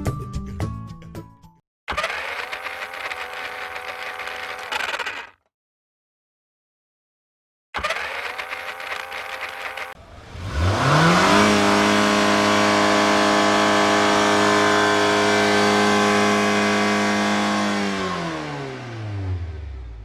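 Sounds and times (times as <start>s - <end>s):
car engine revving: 7.8s - 20.0s.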